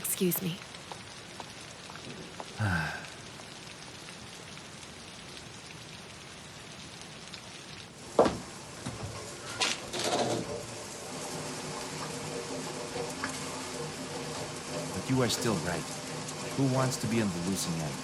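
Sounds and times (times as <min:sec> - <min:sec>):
rain-like hiss: 0:00.0 - 0:18.0
low falling vocal sound: 0:02.6 - 0:03.2.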